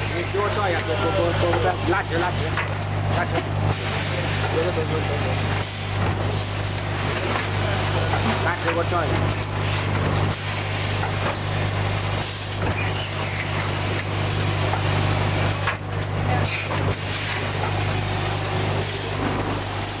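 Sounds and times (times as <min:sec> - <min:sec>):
packing machine humming and clattering: 0:00.0 - 0:20.0.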